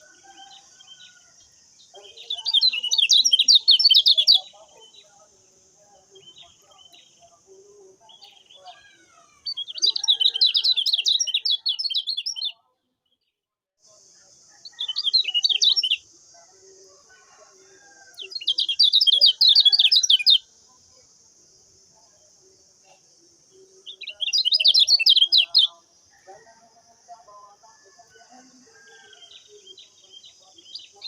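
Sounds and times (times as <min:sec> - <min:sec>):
small bird chattering song: 0:00.0 - 0:05.3, 0:06.0 - 0:12.7, 0:14.6 - 0:16.1, 0:18.2 - 0:20.5, 0:22.9 - 0:25.9, 0:29.0 - 0:31.0.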